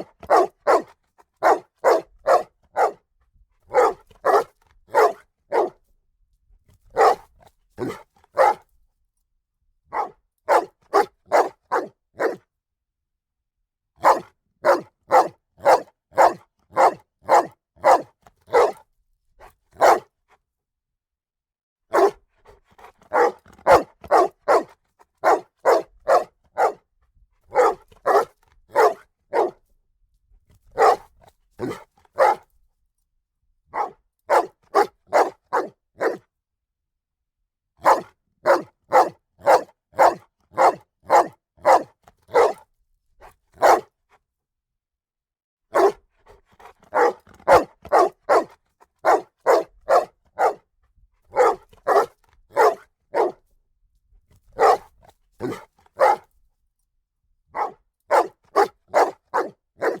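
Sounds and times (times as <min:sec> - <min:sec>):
dog barking: 0:00.0 - 0:03.0, 0:03.7 - 0:05.8, 0:06.9 - 0:08.7, 0:09.9 - 0:12.4, 0:14.0 - 0:18.8, 0:19.4 - 0:20.1, 0:21.9 - 0:22.2, 0:22.8 - 0:26.9, 0:27.5 - 0:29.6, 0:30.7 - 0:32.5, 0:33.7 - 0:36.2, 0:37.8 - 0:42.6, 0:43.6 - 0:44.0, 0:45.7 - 0:50.7, 0:51.3 - 0:53.4, 0:54.5 - 0:56.3, 0:57.5 - 1:00.0.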